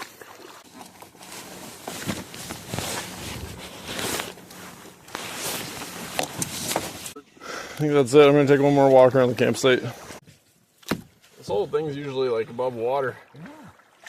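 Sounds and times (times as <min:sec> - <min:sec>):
camping gear rustling: 0:00.0 - 0:07.2
footsteps: 0:00.6 - 0:07.2.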